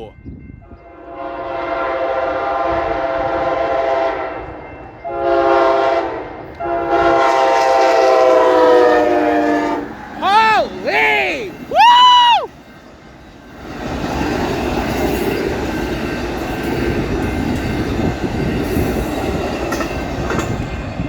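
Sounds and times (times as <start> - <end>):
train horn blasts: 0.6 - 10.1.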